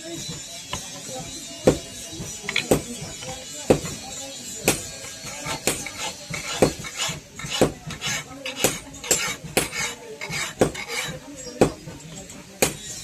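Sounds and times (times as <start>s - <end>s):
hammer striking blade on anvil: 4.6s - 11.8s.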